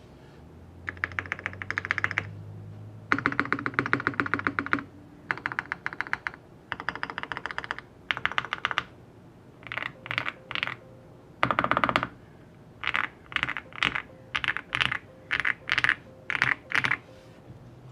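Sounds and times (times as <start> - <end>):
mechanical keyboard typing: 0.9 - 2.3, 3.1 - 8.9, 9.6 - 10.8, 11.4 - 12.2, 12.8 - 17.0.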